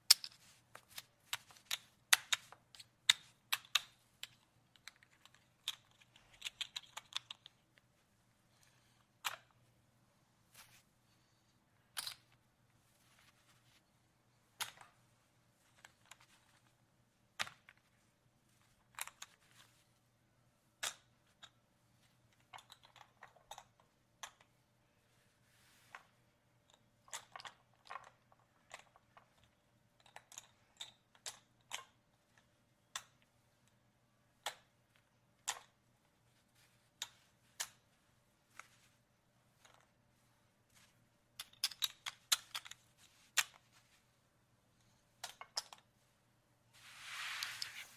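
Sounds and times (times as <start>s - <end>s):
casino chips clacking together: 0.0s - 7.6s, 11.9s - 12.4s, 26.7s - 32.0s, 41.4s - 43.6s.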